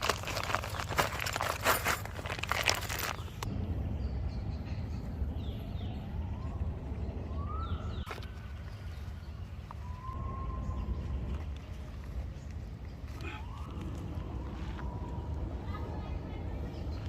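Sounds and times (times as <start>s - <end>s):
crunching: 0.0s - 3.5s.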